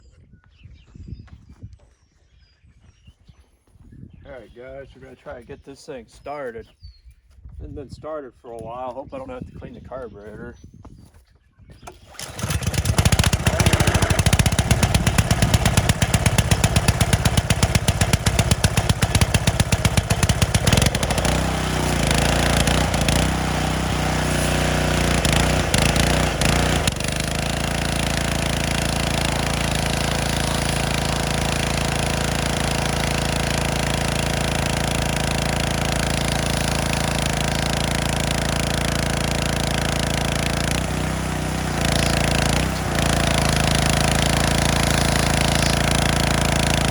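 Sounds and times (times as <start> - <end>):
small gasoline engine running: 11.8 - 46.9.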